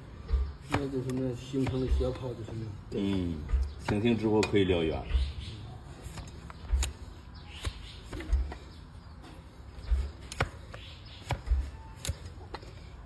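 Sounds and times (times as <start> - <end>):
low thuds: 0.0 - 7.4.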